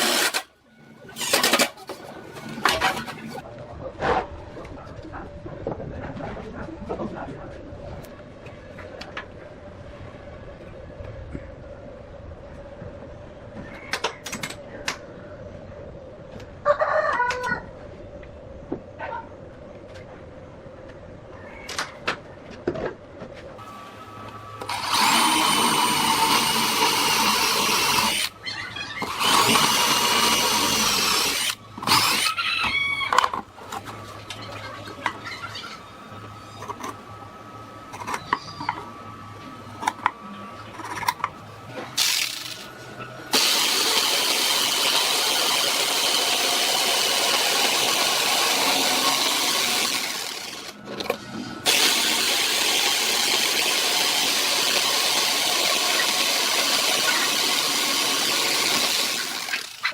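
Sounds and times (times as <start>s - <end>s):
angle grinder whining: 23.6s - 32.4s, 42.0s - 59.9s.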